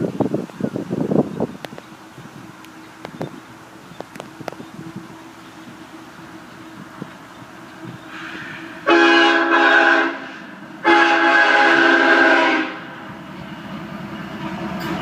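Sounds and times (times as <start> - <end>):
train rumbling: 0.0 - 15.0
locomotive air horn blasts: 8.1 - 13.0.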